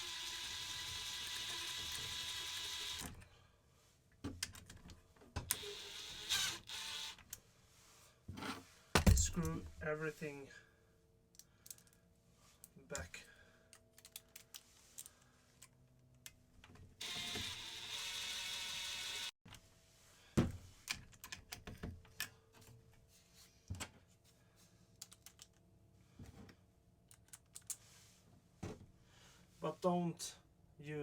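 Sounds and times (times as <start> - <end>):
impact driver running: 5.6 - 7.2, 17.0 - 19.3
tools and parts clicking: 13.7 - 16.4, 25.0 - 25.6, 27.1 - 27.8.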